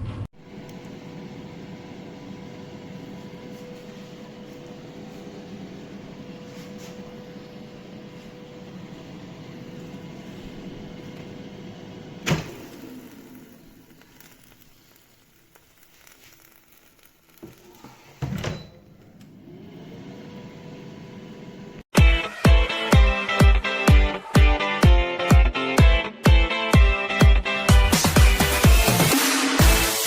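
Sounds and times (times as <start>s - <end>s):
air fryer fan humming: 0.0s - 15.5s
appliance clunk: 12.2s - 13.0s.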